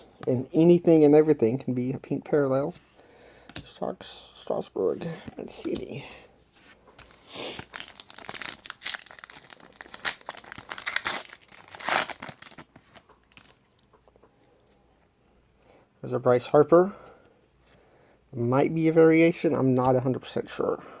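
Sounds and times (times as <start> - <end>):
wrapper tearing and crinkling: 7.4 - 14.0.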